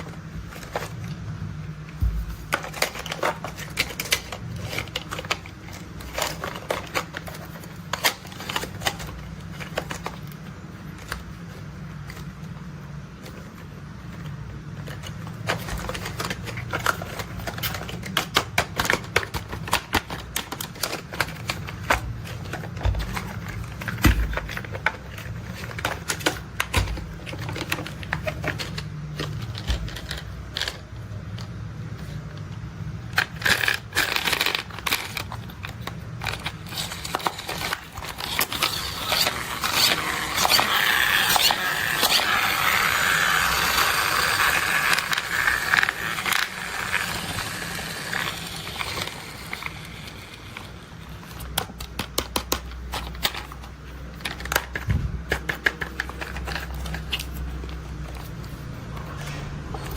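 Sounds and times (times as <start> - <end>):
clicking and rattling plastic parts: 0.0 - 59.9.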